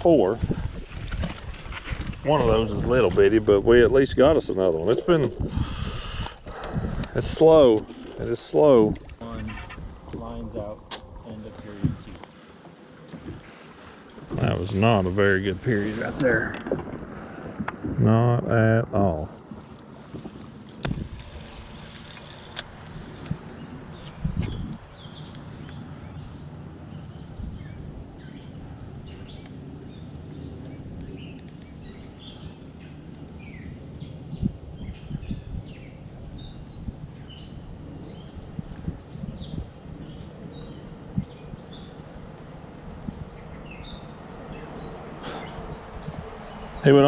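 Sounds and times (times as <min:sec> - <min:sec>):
birds chirping and calling: 0:01.8 - 0:12.3, 0:20.9 - 0:47.0.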